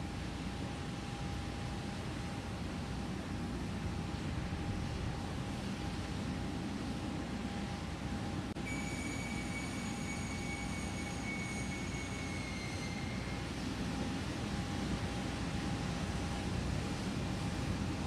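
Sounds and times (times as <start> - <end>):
high whistle: 8.6 - 13.5.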